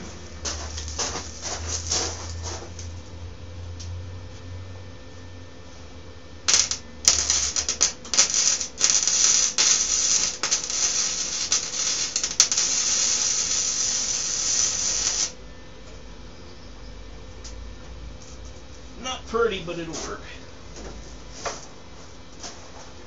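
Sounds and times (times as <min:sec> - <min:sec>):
welding arc crackling: 0:00.0 - 0:02.8, 0:06.4 - 0:15.4.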